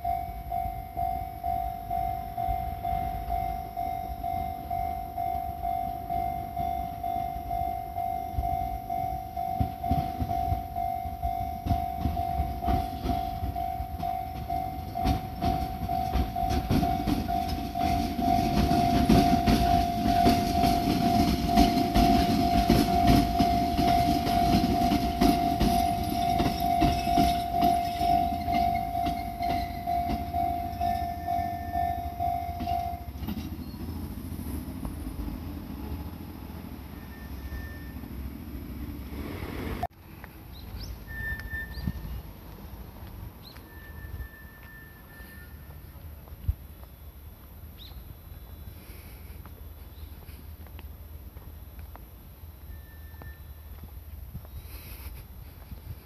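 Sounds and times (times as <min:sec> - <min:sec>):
level crossing alarm dinging: 0:00.0 - 0:33.4
train rumble: 0:00.0 - 0:56.0
train wheels clicking on rails: 0:00.4 - 0:56.0.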